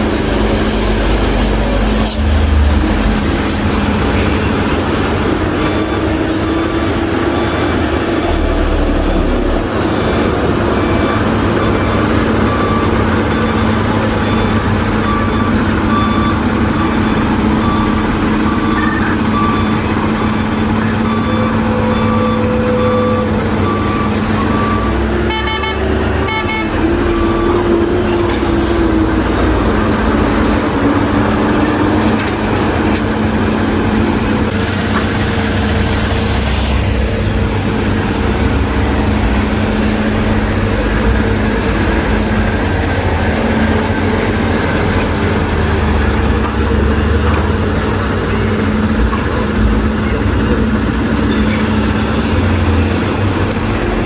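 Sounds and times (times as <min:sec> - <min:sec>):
diesel machinery running: 0:00.0 - 0:54.0
back-up alarm beeping: 0:08.2 - 0:27.7.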